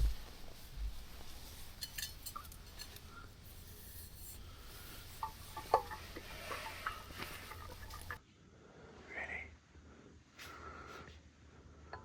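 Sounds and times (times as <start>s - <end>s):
faint rustling: 0.0s - 8.2s
faint low hum: 0.0s - 10.1s.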